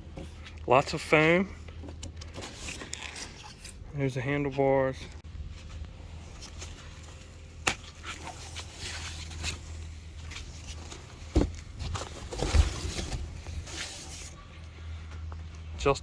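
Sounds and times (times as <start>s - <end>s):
steady low hum: 0.0s - 16.0s
foam and plastic packing rustling: 6.2s - 14.4s.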